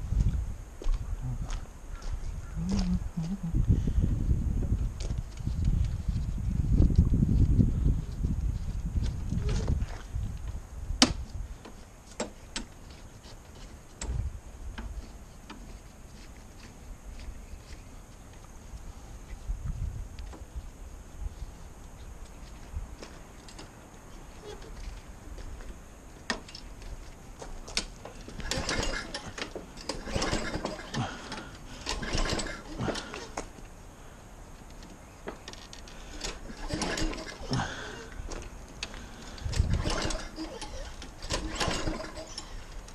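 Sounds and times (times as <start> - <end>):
low rumble: 2.2 - 9.4.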